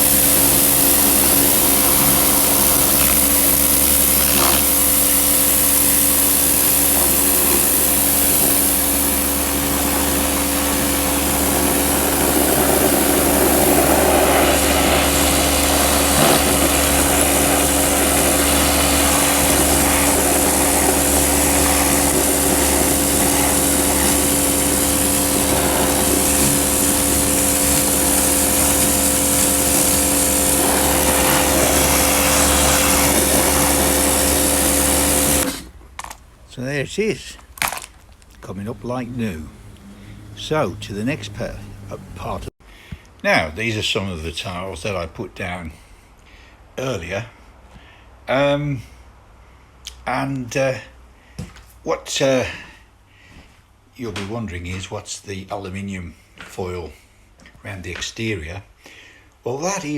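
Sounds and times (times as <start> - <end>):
hiss of water spray: 0.0 - 35.7
pressure washer motor humming: 0.0 - 36.2, 37.4 - 42.5.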